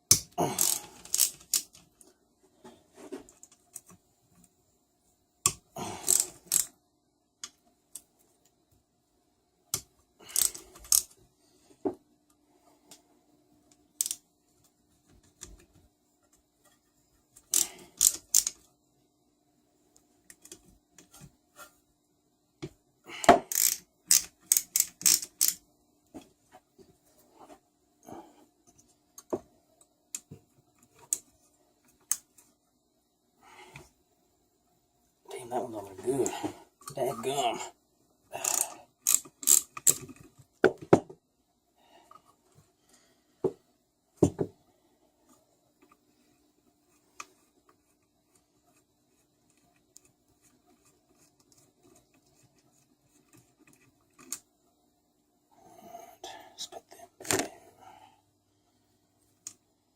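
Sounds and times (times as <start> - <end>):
socket ratchet clicking: 0.1 - 1.8, 5.5 - 6.7, 9.8 - 11.1, 17.4 - 18.6, 23.5 - 25.6, 38.4 - 40.0.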